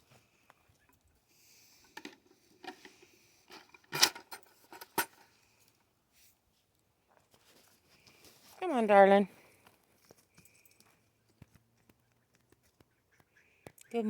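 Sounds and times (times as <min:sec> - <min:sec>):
sharp clinks and rattles: 0:01.8 - 0:05.4, 0:10.0 - 0:11.0.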